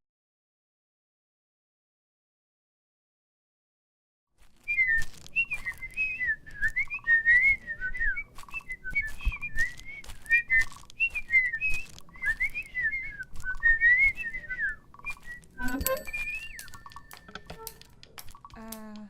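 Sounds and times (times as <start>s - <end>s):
person whistling birdsong: 4.7s - 17.0s.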